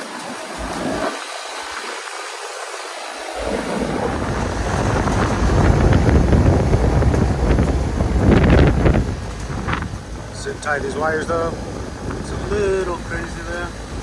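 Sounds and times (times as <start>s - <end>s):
wind gusting on microphone: 0.0s - 14.0s
air conditioning unit running: 3.4s - 14.0s.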